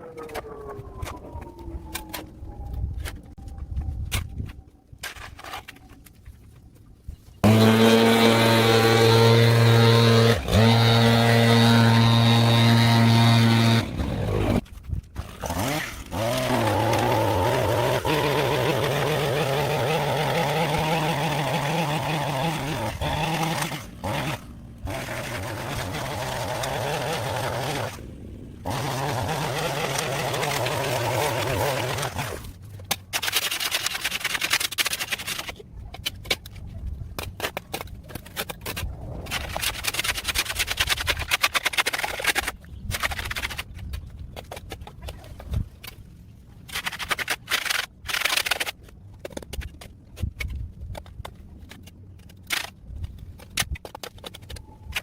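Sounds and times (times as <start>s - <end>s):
small petrol engine revving: 7.4s - 14.6s, 15.2s - 32.4s
tool scraping in dirt: 7.4s - 45.6s.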